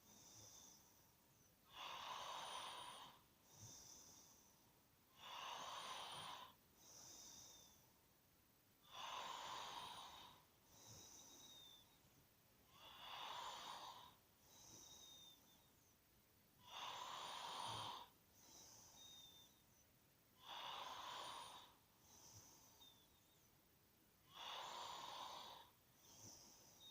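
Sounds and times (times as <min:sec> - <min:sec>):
person snoring faintly: 0:01.6 - 0:04.5, 0:05.1 - 0:07.8, 0:08.8 - 0:11.9, 0:12.7 - 0:15.6, 0:16.6 - 0:19.8, 0:20.4 - 0:23.4, 0:24.2 - 0:26.9.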